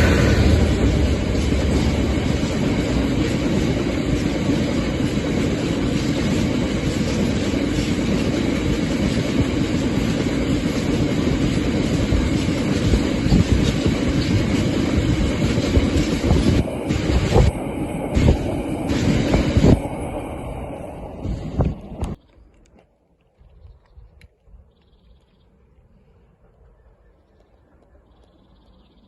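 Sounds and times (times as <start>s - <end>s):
train rumbling past: 0.0s - 22.2s.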